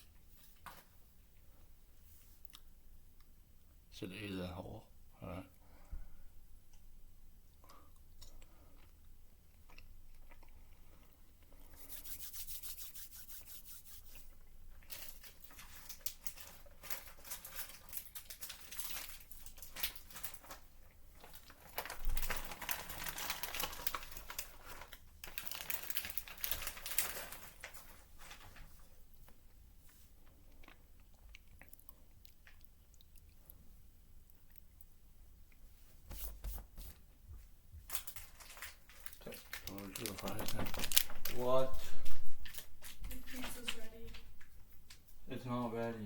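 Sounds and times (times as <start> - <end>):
plastic packaging crinkling: 11.8 - 28.8, 37.9 - 44.5.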